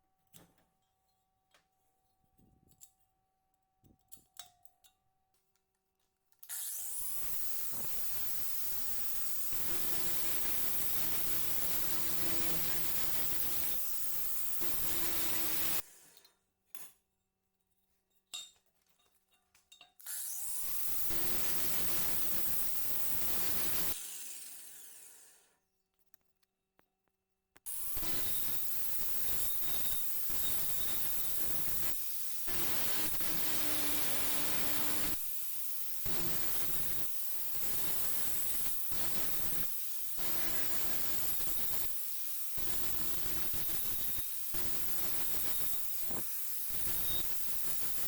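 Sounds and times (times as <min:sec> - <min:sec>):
power tool running: 0:06.5 - 0:15.8, 0:20.1 - 0:25.4, 0:27.7 - 0:48.0.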